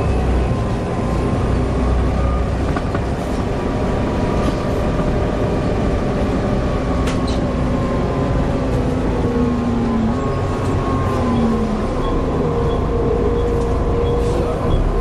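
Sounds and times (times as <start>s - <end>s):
bus engine drone: 0.0s - 15.0s.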